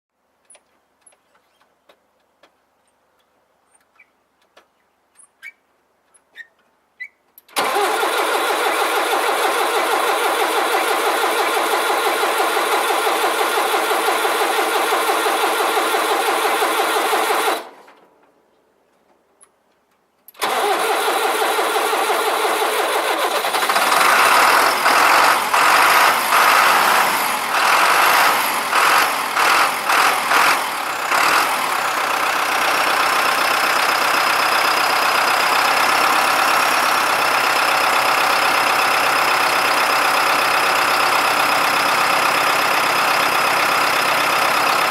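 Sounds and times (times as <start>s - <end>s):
starter cranking: 7.4s - 17.8s, 20.3s - 44.9s
tractor engine running: 7.4s - 44.9s.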